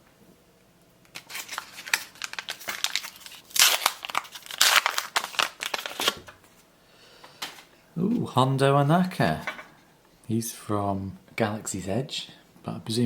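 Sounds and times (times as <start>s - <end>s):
wrapper tearing and crinkling: 1.1s - 6.4s.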